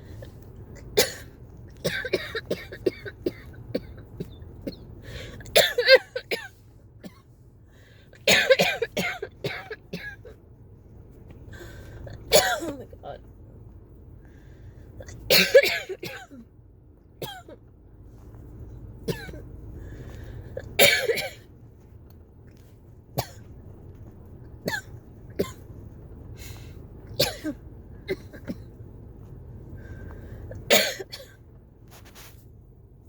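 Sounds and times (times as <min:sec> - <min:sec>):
person coughing: 0:00.8 - 0:04.8, 0:05.5 - 0:07.2, 0:08.3 - 0:10.4, 0:12.1 - 0:12.9, 0:15.0 - 0:16.4, 0:17.2 - 0:17.6, 0:19.1 - 0:19.4, 0:20.8 - 0:21.4, 0:27.2 - 0:28.7, 0:30.6 - 0:31.4.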